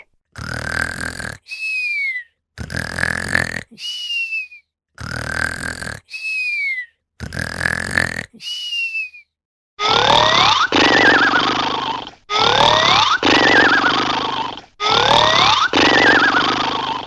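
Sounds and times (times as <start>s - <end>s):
dog snoring: 0.4s - 1.4s, 2.6s - 3.7s, 5.0s - 6.0s, 7.2s - 8.3s, 9.8s - 17.0s.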